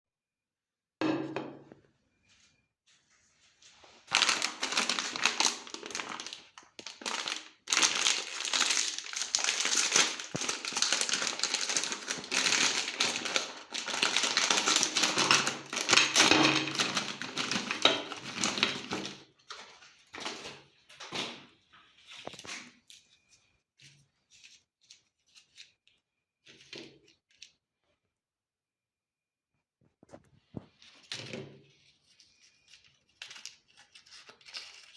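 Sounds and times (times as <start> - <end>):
meat grinder crunching candy: 4.1 - 19.2.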